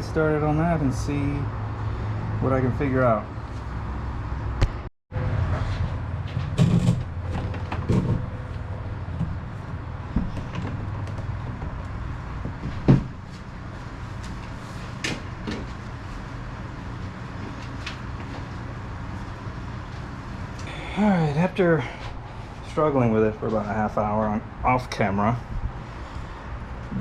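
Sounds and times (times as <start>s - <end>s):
steady low hum: 0.0s - 27.0s
parts knocking and clattering: 6.2s - 13.3s.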